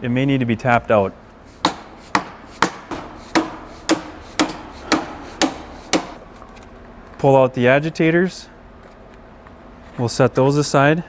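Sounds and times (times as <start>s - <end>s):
hammer knocking on metal shaft: 1.6s - 6.2s.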